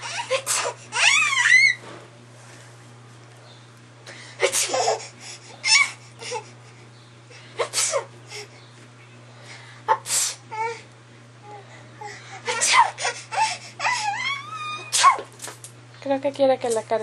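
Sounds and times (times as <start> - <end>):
baby laughing and squealing: 0.0 - 1.8, 4.4 - 6.5, 12.5 - 15.2
adult mock sneezing: 7.6 - 8.1, 14.9 - 15.3.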